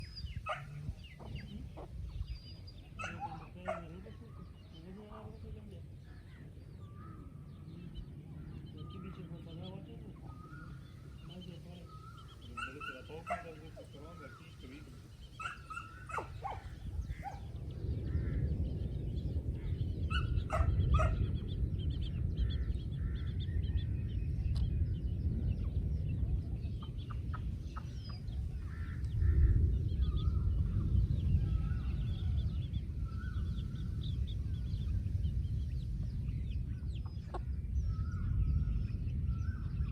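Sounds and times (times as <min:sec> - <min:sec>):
chickens clucking: 0:00.0 - 0:05.8, 0:07.2 - 0:17.5, 0:26.7 - 0:29.1, 0:36.7 - 0:37.6
low rumble: 0:00.0 - 0:39.9.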